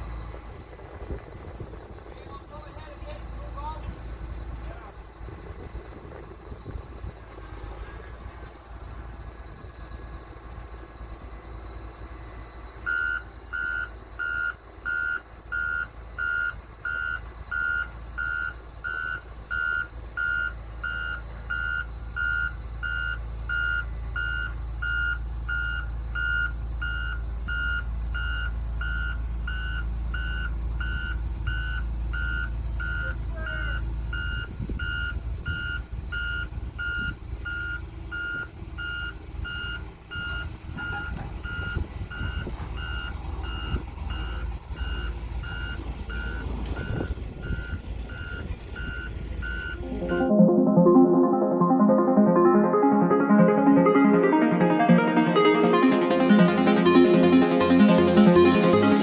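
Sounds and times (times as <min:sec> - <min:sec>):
vehicle backup alarm beeping: 0:12.9 - 0:40.9.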